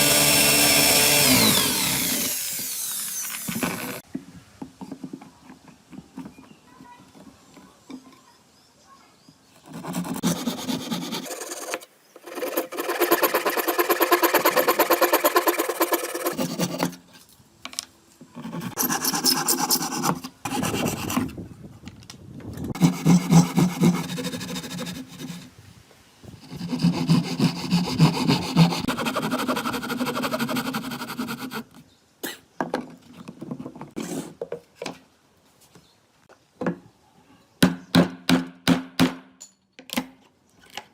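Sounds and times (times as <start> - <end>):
tool rasping against wood: 9.7 - 17.0, 22.8 - 25.4, 26.4 - 31.7.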